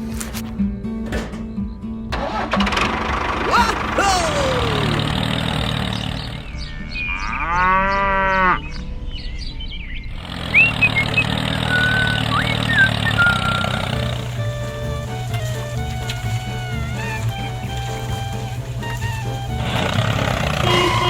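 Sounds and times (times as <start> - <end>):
cow mooing: 4.7 - 9.0, 12.8 - 21.0
short bird chirps: 8.6 - 14.0.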